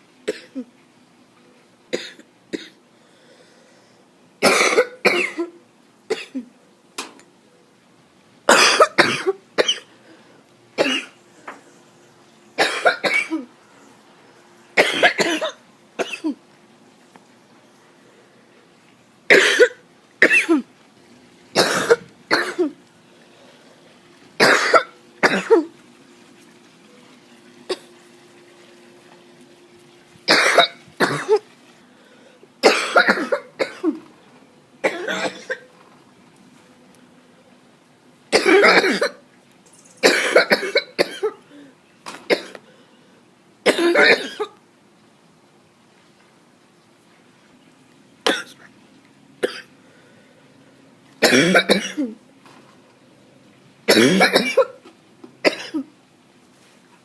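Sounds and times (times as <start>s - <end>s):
person coughing: 4.4s - 6.5s, 8.5s - 9.9s, 14.8s - 16.4s, 19.3s - 20.6s, 21.6s - 22.8s, 24.4s - 25.7s, 32.6s - 34.0s, 34.8s - 35.7s, 38.3s - 39.2s, 40.0s - 41.4s, 43.7s - 44.6s, 51.2s - 52.2s, 53.9s - 54.8s, 55.4s - 55.9s.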